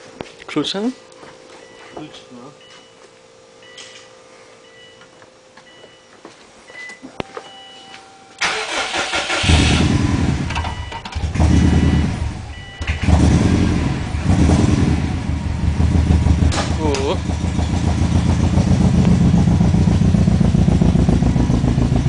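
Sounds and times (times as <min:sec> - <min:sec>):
car engine cranking and running roughly: 0:08.4 - 0:22.0.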